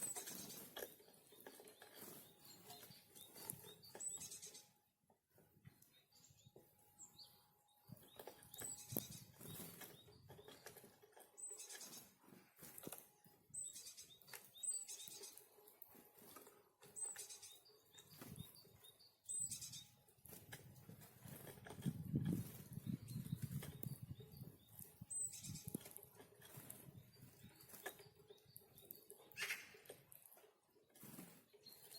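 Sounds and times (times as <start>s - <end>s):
wing flutters and rustles: 0.0s - 4.7s, 7.9s - 31.9s
small birds chirping: 0.0s - 31.9s.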